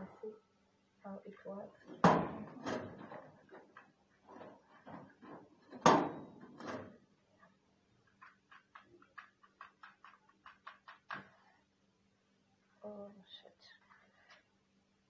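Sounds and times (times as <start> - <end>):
knocks and scrapes on heater: 1.8 - 7.0.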